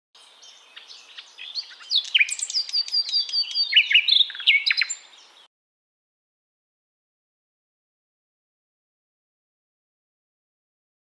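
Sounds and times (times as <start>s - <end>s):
small birds chirping: 0.2s - 5.5s.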